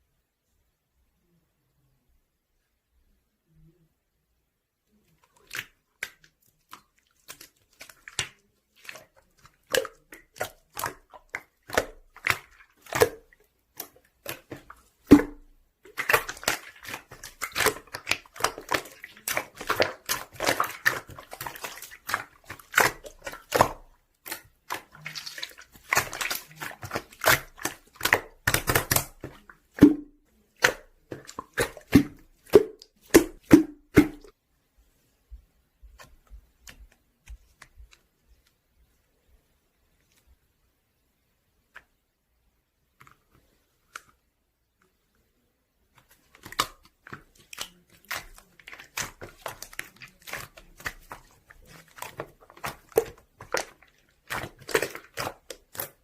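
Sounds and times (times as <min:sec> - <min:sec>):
slime squelching by hand: 0:04.9 - 0:35.0, 0:35.8 - 0:38.9, 0:45.8 - 0:56.0.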